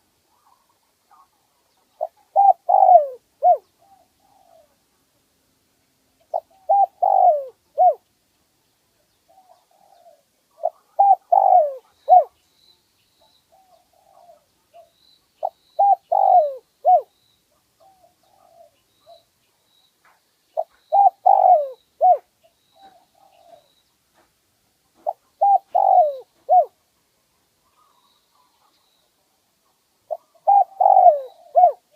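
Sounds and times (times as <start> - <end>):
dove cooing: 0.0 - 4.8, 6.3 - 8.0, 9.3 - 12.4, 13.5 - 19.3, 20.6 - 23.8, 25.0 - 26.8, 30.1 - 31.9.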